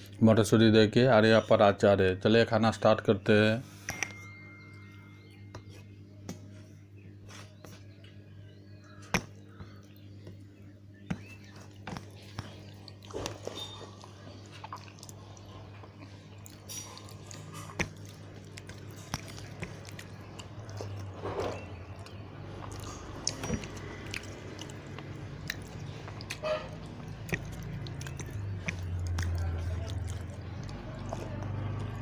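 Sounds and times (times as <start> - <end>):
low steady hum: 0.0 - 32.0
person chewing food: 8.8 - 32.0.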